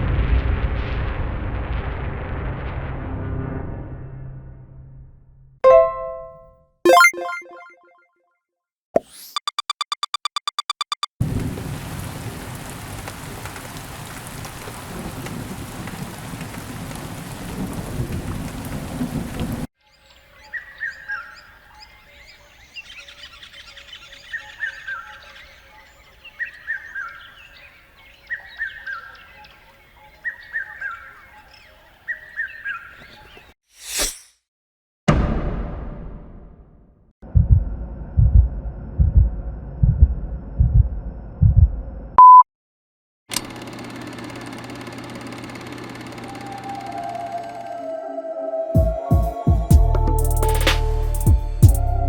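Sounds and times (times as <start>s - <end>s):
rumbling thunder: 0.0s - 3.9s, 11.2s - 19.7s
heavy rain: 11.2s - 19.7s.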